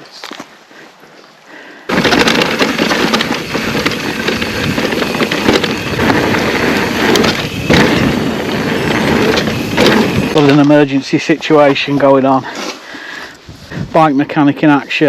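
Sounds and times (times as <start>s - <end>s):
bike knocks and rattles: 1.9s - 10.8s
wind rushing on microphone: 3.4s - 10.4s, 13.4s - 14.1s.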